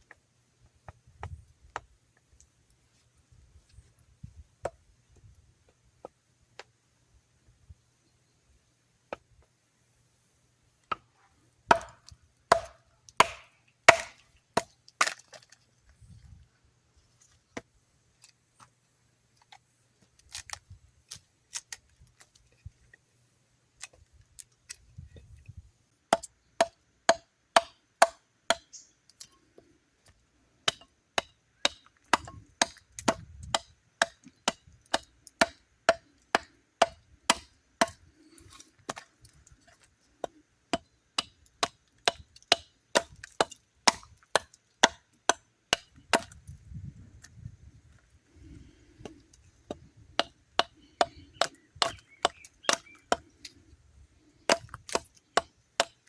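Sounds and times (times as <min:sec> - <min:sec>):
hatchet chopping wood: 0:11.7 - 0:15.2, 0:26.1 - 0:28.8, 0:30.6 - 0:39.0, 0:40.2 - 0:46.4, 0:49.0 - 0:53.4, 0:54.5 - 0:56.0.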